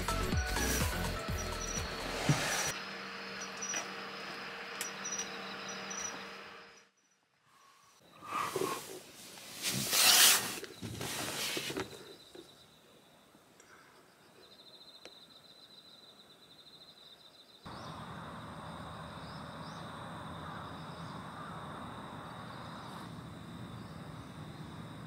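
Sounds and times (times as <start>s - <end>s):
insects trilling: 1.2s - 9.1s, 10.2s - 25.0s
background noise: 7.2s - 25.0s.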